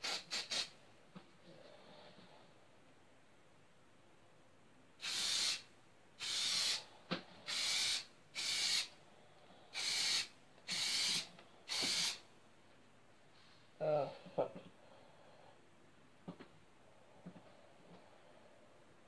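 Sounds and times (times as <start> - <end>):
aerosol spray hissing: 0.0 - 0.7, 5.0 - 6.8, 7.5 - 8.9, 9.8 - 12.2.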